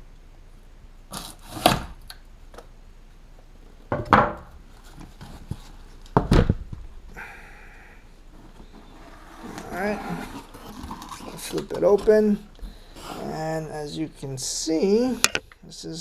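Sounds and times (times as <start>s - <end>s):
faint cardboard rustle: 4.7s - 6.1s
cardboard box scraping and rubbing: 8.4s - 13.4s.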